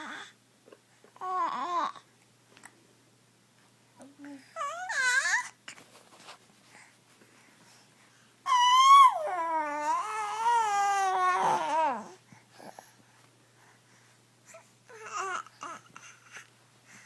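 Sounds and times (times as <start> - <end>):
baby babbling: 1.2 - 2.0, 4.2 - 5.6, 8.5 - 12.8, 14.5 - 16.5.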